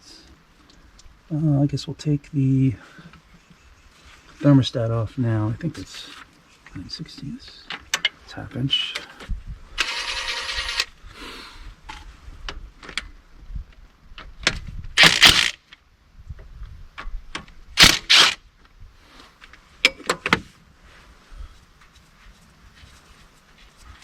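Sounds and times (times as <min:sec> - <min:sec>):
buzzing rattle: 0:09.8 - 0:10.9, 0:15.0 - 0:15.6.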